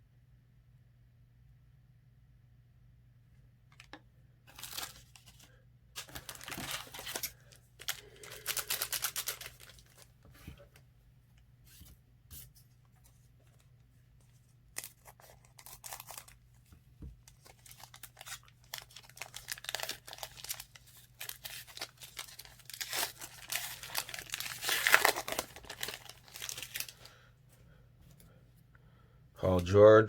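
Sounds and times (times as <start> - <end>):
foil wrapper crinkling and tearing: 4.5 - 10.1, 14.7 - 16.6, 17.2 - 27.2.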